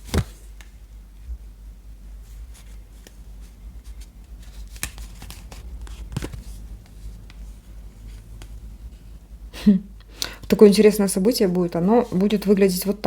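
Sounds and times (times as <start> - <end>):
cards rustling: 2.5 - 8.6.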